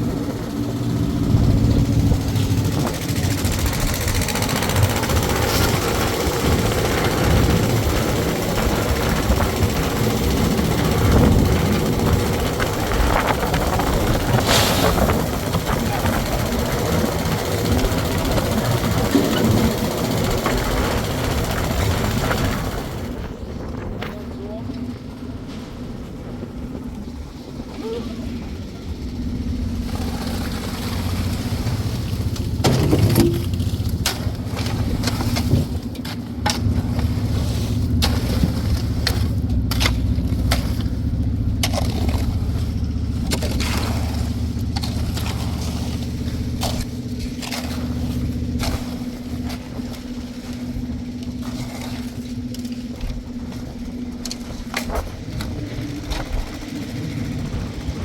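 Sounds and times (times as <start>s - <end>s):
engine running: 0.0s - 58.0s
knocks scrapes and clatters: 1.7s - 24.3s.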